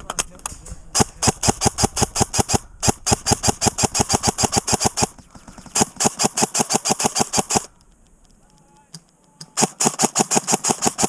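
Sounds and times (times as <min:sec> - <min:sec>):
airsoft gun rapid fire: 0:00.9 - 0:07.7, 0:09.6 - 0:11.0.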